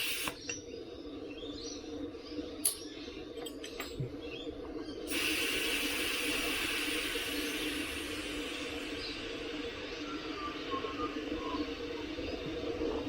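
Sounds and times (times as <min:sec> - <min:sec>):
air hissing from tyre valve: 0:00.0 - 0:00.5, 0:05.1 - 0:12.3.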